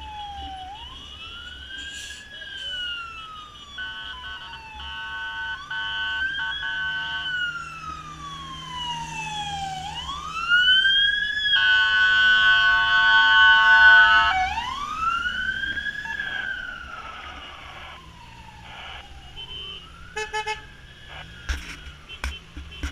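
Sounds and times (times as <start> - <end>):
fire engine siren wailing: 0.0 - 22.1
blaring horn tone: 3.2 - 7.3.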